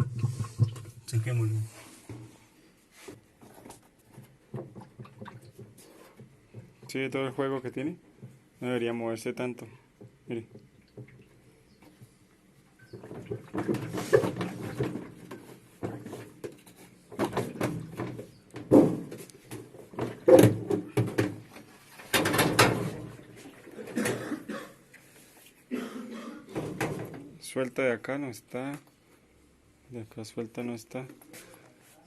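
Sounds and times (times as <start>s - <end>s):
washing machine basket clunking: 20.0s - 24.4s.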